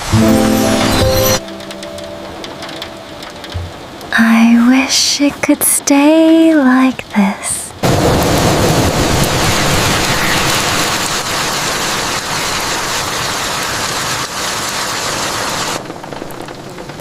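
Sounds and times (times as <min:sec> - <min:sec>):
heavy rain falling: 0:00.0 - 0:07.1, 0:07.8 - 0:17.0.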